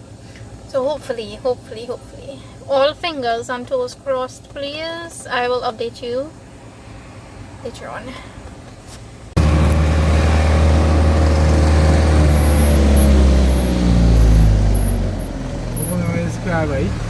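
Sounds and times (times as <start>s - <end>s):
vehicle engine running loud: 9.4s - 17.0s.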